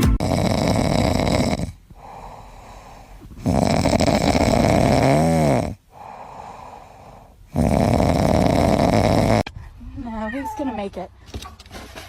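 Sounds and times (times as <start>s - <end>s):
loud rasping snoring: 0.2s - 9.5s.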